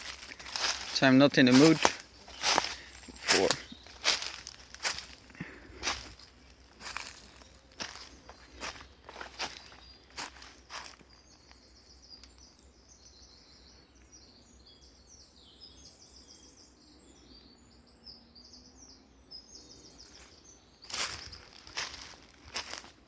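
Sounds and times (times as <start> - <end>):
footsteps on forest floor: 0.0 - 11.7, 20.1 - 23.0
songbird chirping: 0.0 - 23.0.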